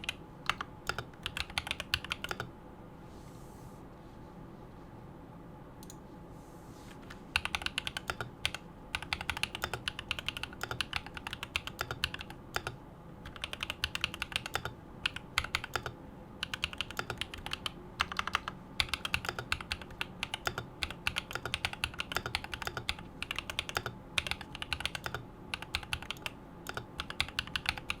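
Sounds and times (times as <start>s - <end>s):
typing on mechanical keyboard: 0.0s - 2.5s, 7.4s - 28.0s.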